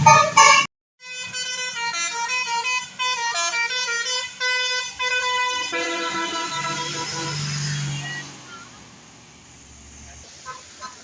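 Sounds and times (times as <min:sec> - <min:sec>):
musical bus air horn tune: 0:00.0 - 0:08.4.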